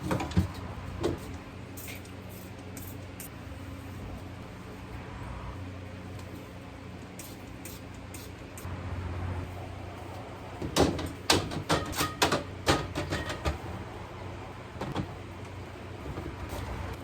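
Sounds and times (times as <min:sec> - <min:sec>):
objects knocking and clattering: 0:10.6 - 0:13.6.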